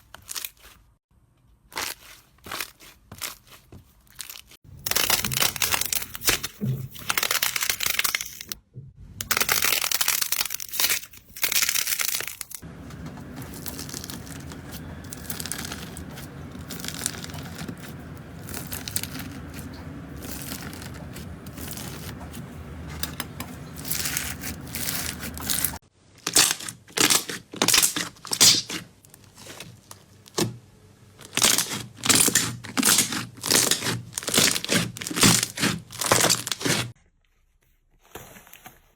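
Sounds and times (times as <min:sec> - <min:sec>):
hands squishing slime: 0:01.6 - 0:08.4, 0:09.3 - 0:30.6, 0:31.3 - 0:36.9
steady low hum: 0:12.6 - 0:25.8.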